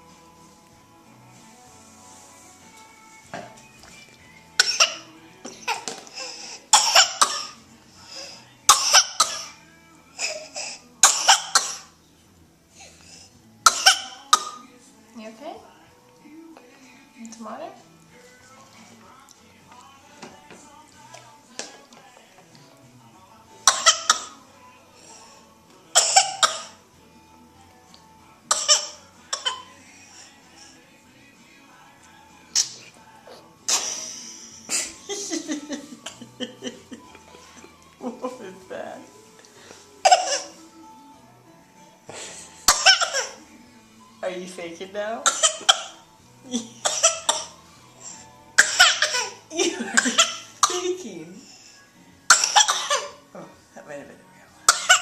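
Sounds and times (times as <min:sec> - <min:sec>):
girl coughing: 0:04.6 - 0:07.6, 0:08.7 - 0:09.6, 0:10.2 - 0:11.9, 0:13.7 - 0:14.6, 0:23.7 - 0:24.4, 0:26.0 - 0:26.8, 0:28.5 - 0:29.7, 0:40.0 - 0:40.6, 0:42.7 - 0:43.4, 0:45.2 - 0:47.6, 0:48.6 - 0:51.0, 0:52.3 - 0:53.2, 0:54.7 - 0:55.0.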